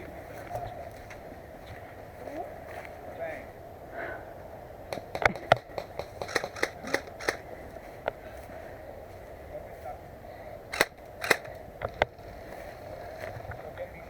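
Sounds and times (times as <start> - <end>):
airsoft gun shots: 4.9 - 7.5, 10.7 - 11.6.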